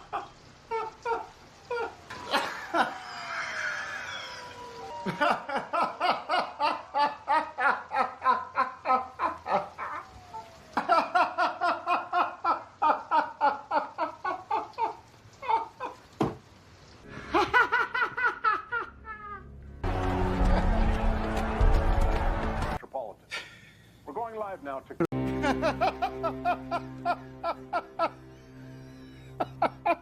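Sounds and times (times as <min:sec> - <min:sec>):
person laughing hard: 0:00.0 - 0:03.9, 0:04.9 - 0:10.1, 0:10.8 - 0:16.0, 0:17.2 - 0:19.5, 0:25.2 - 0:30.0.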